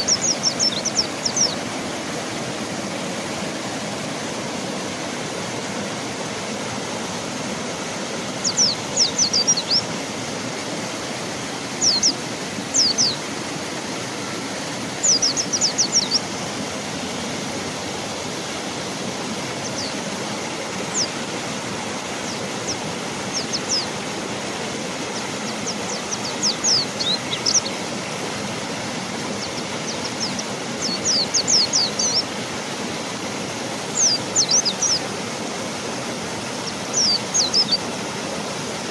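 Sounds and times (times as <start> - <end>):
bird chirping: 0.0 - 1.6, 8.4 - 9.8, 11.8 - 13.2, 15.0 - 16.2, 19.6 - 20.0, 20.9 - 21.2, 22.2 - 23.9, 25.5 - 27.8, 29.4 - 32.3, 34.0 - 35.0, 36.6 - 37.8
river flowing: 0.0 - 38.9.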